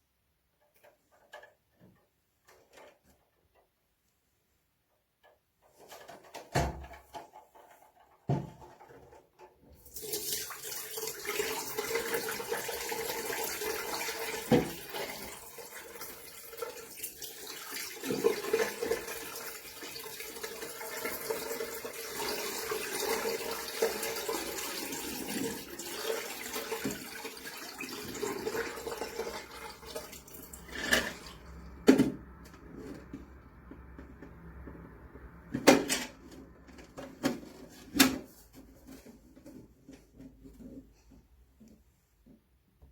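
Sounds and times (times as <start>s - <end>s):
water pouring into a sink: 9.8s - 33.2s.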